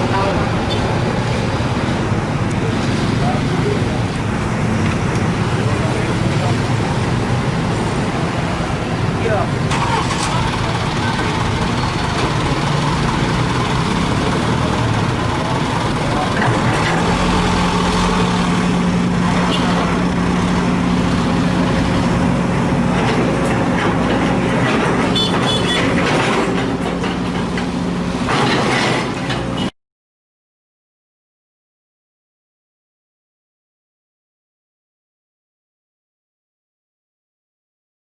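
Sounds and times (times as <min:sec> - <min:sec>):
heavy diesel machinery running: 0:00.0 - 0:29.7.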